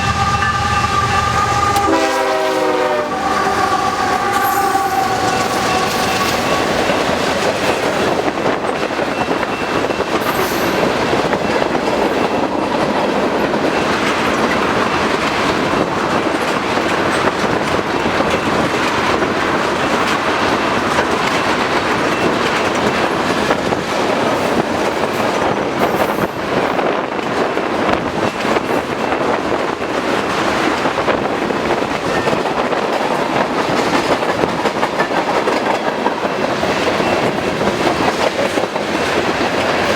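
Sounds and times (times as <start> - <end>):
locomotive horn: 0.0 - 7.3
train wheels clattering on track: 0.0 - 39.9.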